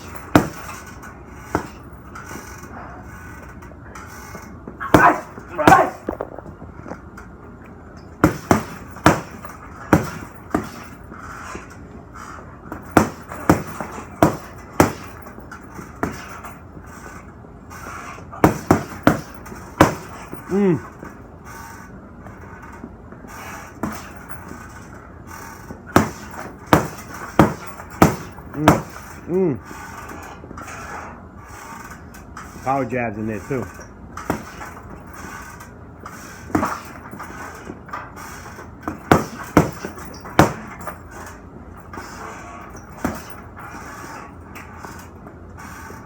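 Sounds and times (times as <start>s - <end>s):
punches on heavy bag: 0.0s - 0.8s, 1.5s - 1.9s, 4.8s - 6.5s, 8.2s - 11.1s, 12.7s - 16.6s, 18.3s - 21.0s, 23.8s - 24.5s, 25.9s - 29.6s, 34.2s - 35.2s, 36.5s - 37.7s, 38.4s - 41.2s, 42.8s - 43.4s.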